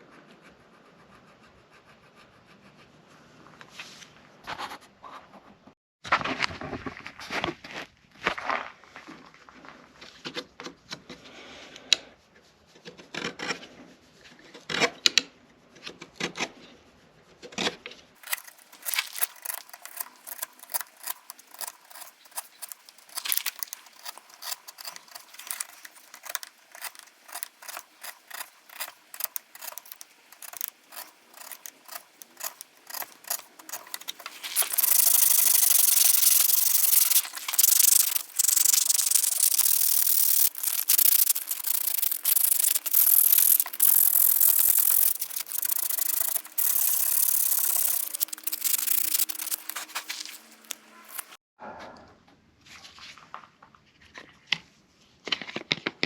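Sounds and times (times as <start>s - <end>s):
continuous sanding: 0.0s - 4.0s, 18.1s - 51.4s
rubbing strokes on wood: 18.2s - 51.4s.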